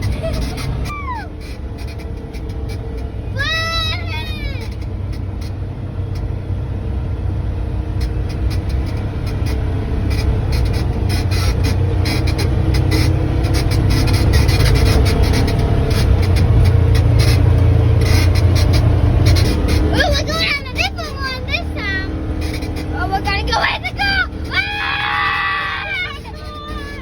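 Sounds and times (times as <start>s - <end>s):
utility vehicle engine running: 0.0s - 27.0s
rattles and knocks: 8.0s - 27.0s.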